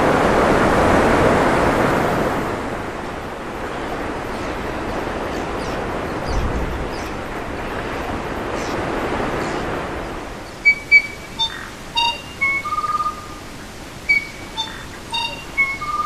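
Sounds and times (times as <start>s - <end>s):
ocean surf on shore: 0.0s - 16.0s
songbird whistled notes: 10.6s - 13.4s, 14.1s - 16.0s.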